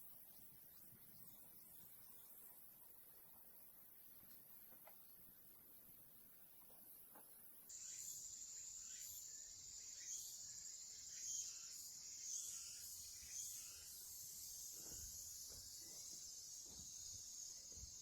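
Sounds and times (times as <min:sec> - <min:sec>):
insects trilling: 0:06.9 - 0:18.0.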